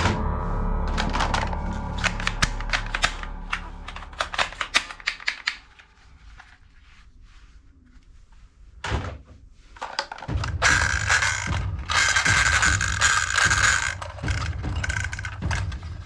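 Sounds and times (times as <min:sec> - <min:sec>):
background music: 0:00.0 - 0:06.6.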